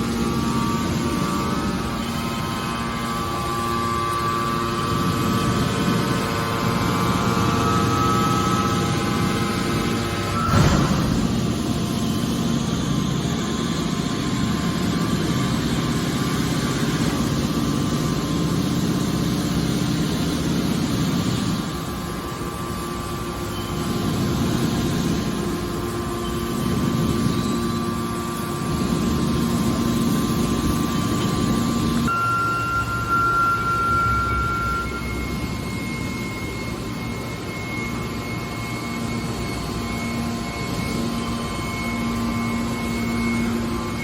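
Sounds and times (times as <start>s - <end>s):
hydraulic baler machine drone: 0.0s - 44.0s.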